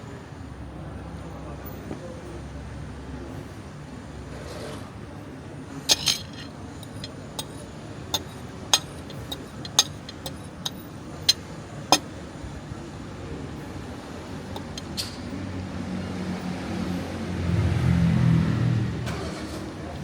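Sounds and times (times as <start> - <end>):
steady background hum: 5.5 - 16.0
sharp clinks: 5.9 - 12.1, 14.5 - 15.3.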